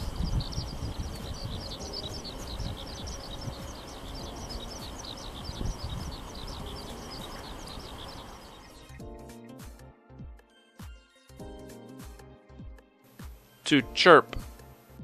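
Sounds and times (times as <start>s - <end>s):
low background rumble: 0.0s - 8.7s
flock of small birds chirping: 0.0s - 9.0s.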